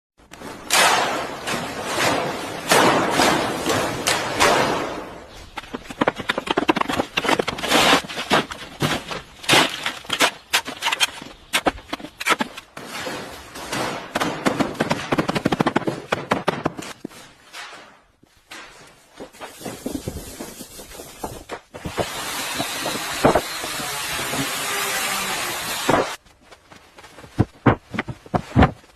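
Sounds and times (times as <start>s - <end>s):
overlapping knocks cracks and thuds: 0.3s - 17.9s, 25.9s - 28.9s.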